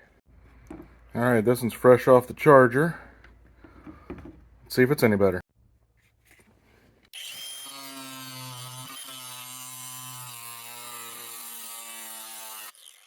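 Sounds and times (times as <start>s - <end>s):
angle grinder running: 7.2s - 13.0s.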